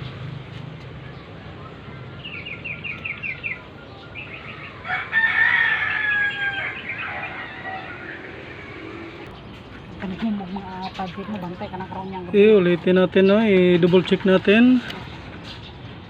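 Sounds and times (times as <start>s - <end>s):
rooster crowing: 4.6s - 9.3s
rooster clucking: 4.7s - 9.3s.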